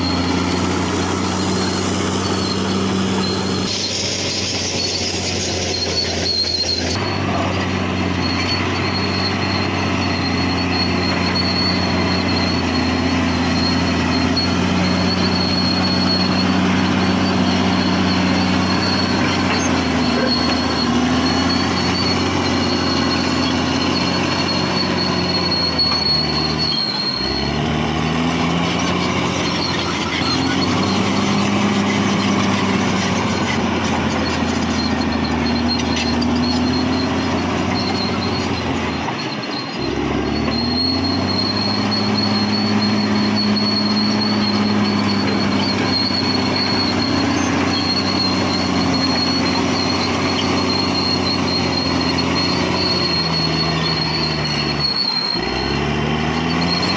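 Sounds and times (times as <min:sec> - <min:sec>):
bulldozer diesel engine under load: 0:00.0 - 0:56.9
steel tracks squealing and clanking: 0:00.0 - 0:56.9.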